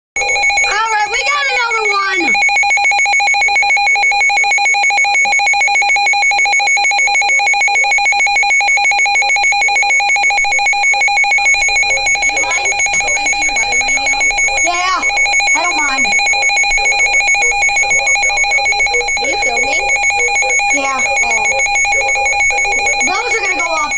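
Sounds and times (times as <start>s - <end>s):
voices talking: 0.2s - 2.6s, 10.3s - 23.9s
pulsing electronic alert tone: 0.2s - 23.9s.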